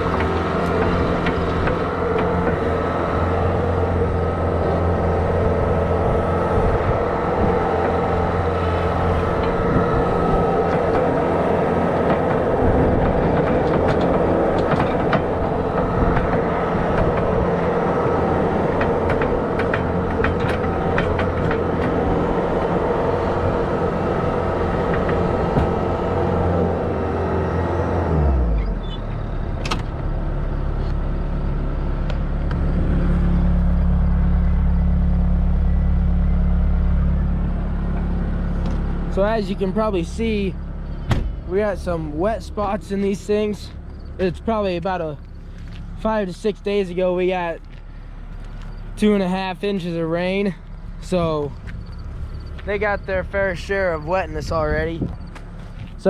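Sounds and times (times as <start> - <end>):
knocks and clanks: 0.0 - 23.8, 24.7 - 26.8, 37.9 - 48.8
loader engine running: 0.0 - 56.0.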